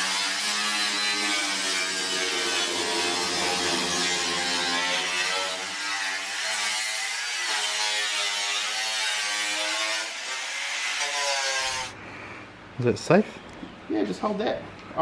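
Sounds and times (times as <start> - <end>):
angle grinder cutting sheet metal: 0.0 - 11.9.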